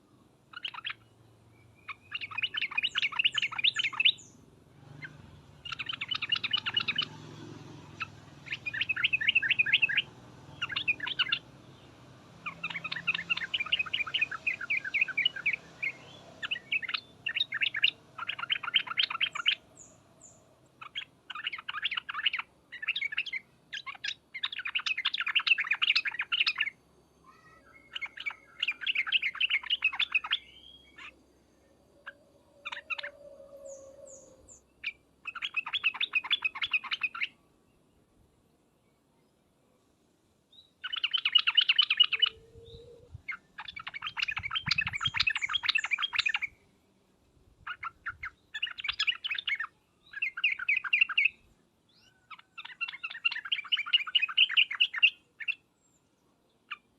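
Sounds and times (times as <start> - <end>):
bird chattering call: 1.9 - 4.3, 5.0 - 7.2, 7.9 - 11.4, 12.4 - 19.7, 32.6 - 37.3, 40.8 - 46.6, 47.7 - 51.4.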